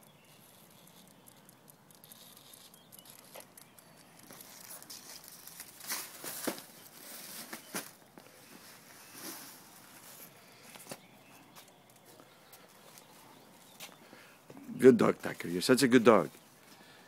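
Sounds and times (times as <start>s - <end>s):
newspaper rustling and crinkling: 4.2s - 11.0s.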